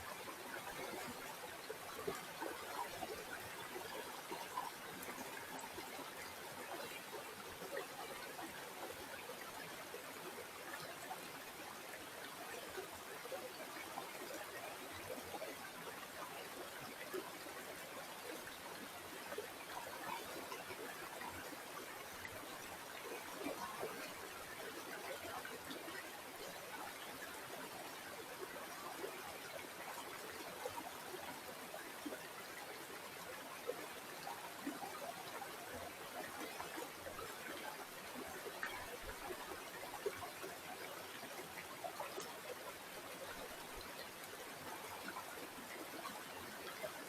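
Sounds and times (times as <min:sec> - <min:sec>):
stream water flowing and trickling: 0:00.0 - 0:47.0.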